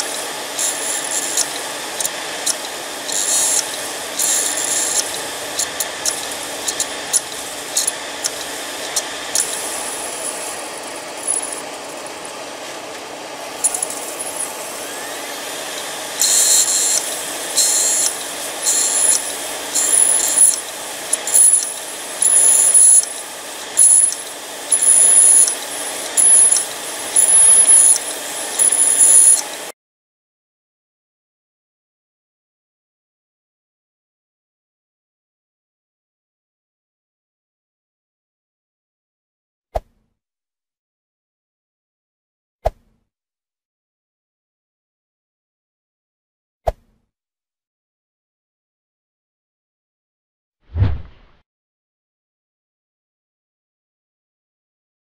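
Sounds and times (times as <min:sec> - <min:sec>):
hard drive whirring: 0:00.0 - 0:29.7
rasping bursts: 0:00.0 - 0:29.7
hard drive clicking: 0:01.1 - 0:09.7.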